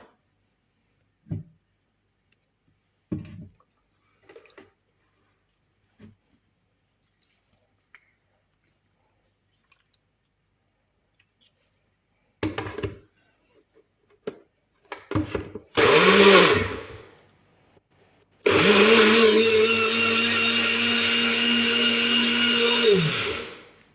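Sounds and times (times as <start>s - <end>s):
blender motor running: 15.8s - 17.0s, 18.4s - 23.8s.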